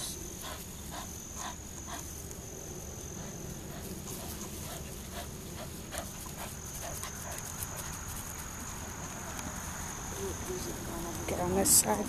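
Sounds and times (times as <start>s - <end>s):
dog panting: 0.0s - 2.3s, 3.1s - 9.4s.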